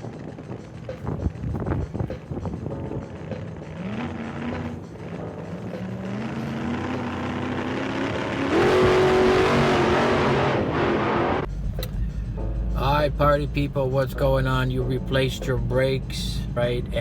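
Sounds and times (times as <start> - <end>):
car engine accelerating: 0.0 - 12.4.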